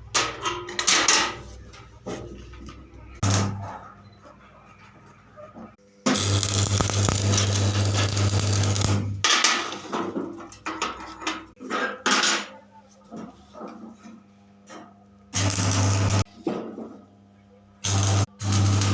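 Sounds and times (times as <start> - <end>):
arc welding crackling hiss: 6.1 - 9.1, 15.4 - 16.3, 17.8 - 18.9.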